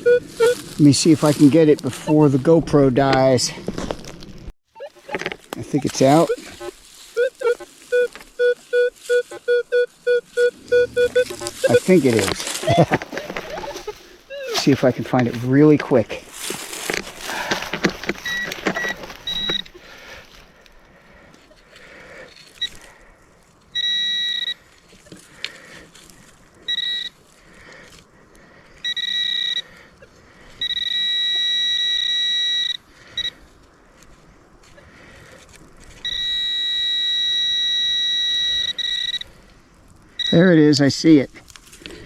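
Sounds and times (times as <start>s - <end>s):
metal detector high-pitched tone: 0.0s - 0.7s, 4.7s - 15.4s, 17.8s - 19.7s, 23.7s - 24.6s, 26.7s - 27.2s, 28.8s - 29.6s, 30.6s - 33.4s, 36.0s - 39.3s, 40.2s - 40.6s.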